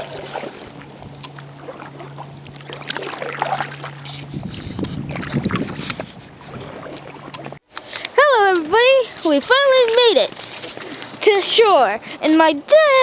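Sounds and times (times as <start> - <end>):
paddle splashes: 0.0 - 11.7.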